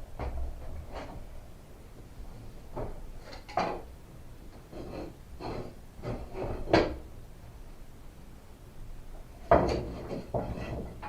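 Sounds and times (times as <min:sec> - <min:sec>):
wooden knocks and scrapes: 0:04.6 - 0:07.0, 0:09.4 - 0:11.0.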